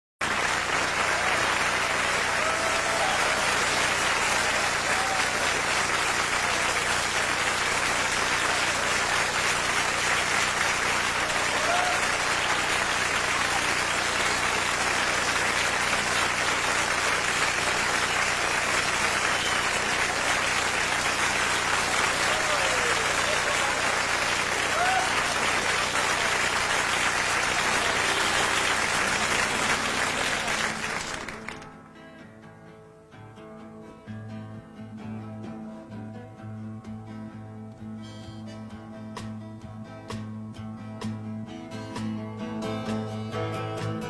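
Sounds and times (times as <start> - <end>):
audience applauding and cheering: 0.2 - 31.8
faint whistles: 19.2 - 19.8.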